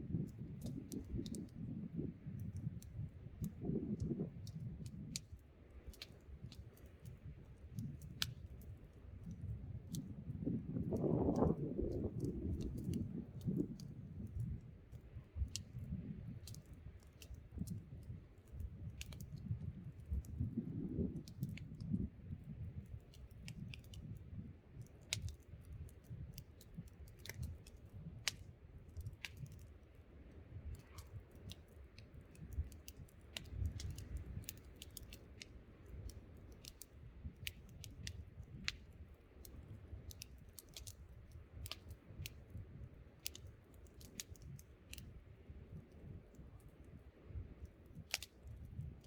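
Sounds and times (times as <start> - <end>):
gusting wind rumble: 0.0 - 5.2, 9.6 - 14.5
campfire crackling and popping: 0.0 - 49.0.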